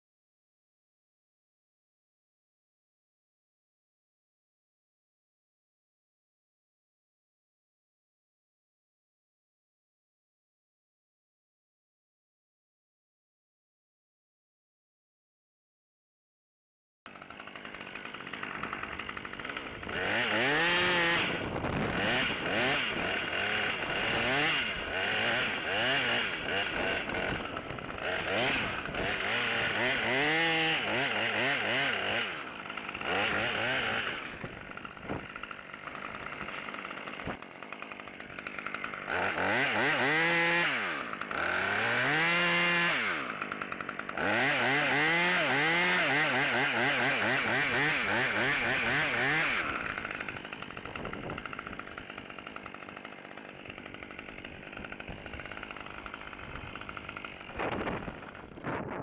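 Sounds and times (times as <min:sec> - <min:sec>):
chainsaw revving and idling: 0:17.1 - 0:59.0.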